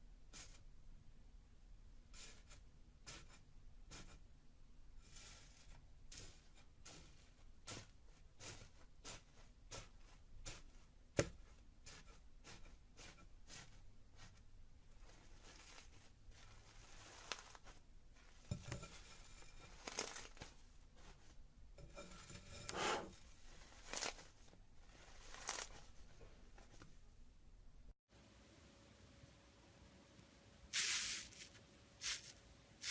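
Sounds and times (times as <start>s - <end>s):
crunching tearing rustles: 19.8s - 20.5s, 25.2s - 25.8s.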